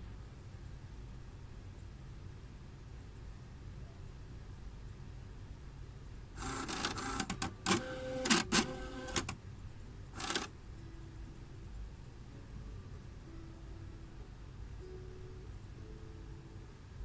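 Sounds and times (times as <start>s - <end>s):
franking machine whirring and clicking: 6.4s - 9.4s, 10.2s - 10.5s.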